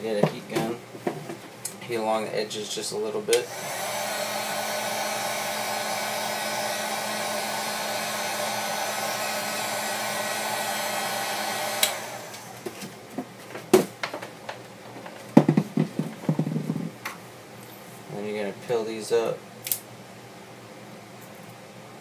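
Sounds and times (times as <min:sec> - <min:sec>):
heat gun blowing: 0:03.3 - 0:12.8.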